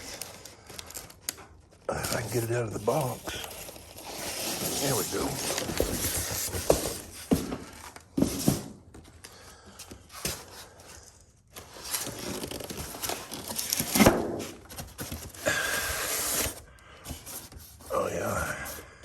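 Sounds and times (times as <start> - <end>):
packaging rustling and tearing: 0.0 - 8.1, 11.5 - 16.6.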